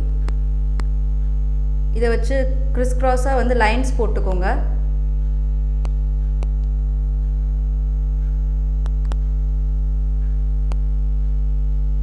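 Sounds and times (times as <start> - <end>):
electrical mains hum: 0.0 - 12.0
faint clicks: 8.2 - 9.4.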